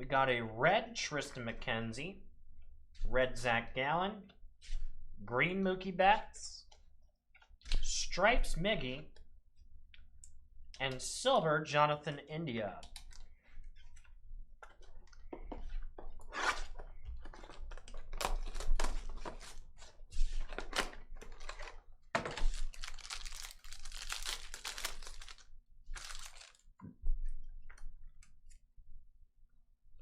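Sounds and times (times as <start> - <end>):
wrapper rustling: 17.2 - 26.7
cards clicking and crinkling: 17.3 - 26.7.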